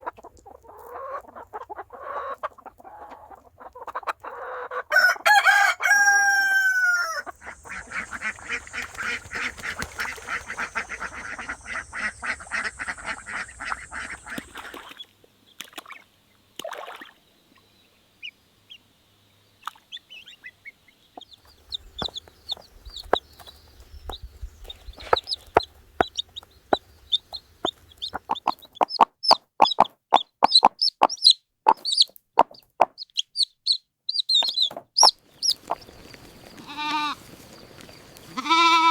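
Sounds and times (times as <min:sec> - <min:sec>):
chickens clucking: 0:00.0 - 0:15.0, 0:20.0 - 0:38.7
rooster crowing: 0:04.9 - 0:07.4
rapid calls and sharp chirps: 0:06.8 - 0:15.1, 0:19.6 - 0:32.1, 0:33.0 - 0:38.8.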